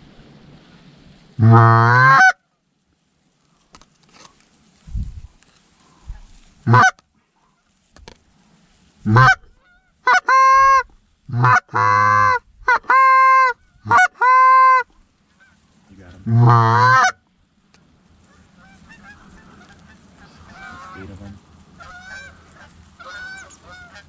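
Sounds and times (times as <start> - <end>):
goose honks and clucks: 1.4 - 2.4, 6.1 - 7.7, 9.1 - 15.6, 16.2 - 17.3, 18.2 - 24.0.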